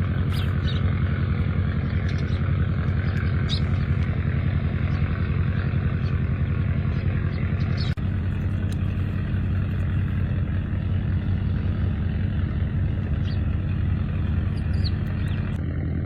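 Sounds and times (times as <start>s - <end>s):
low engine drone: 0.0s - 16.0s
small bird chirps: 0.3s - 0.9s, 1.8s - 4.1s, 6.9s - 8.0s, 13.1s - 13.5s, 14.4s - 15.6s.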